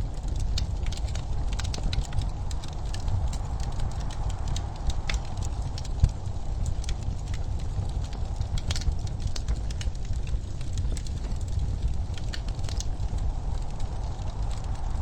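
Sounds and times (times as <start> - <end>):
steady low rumble: 0.0 - 15.0
wood fire crackling: 0.0 - 15.0.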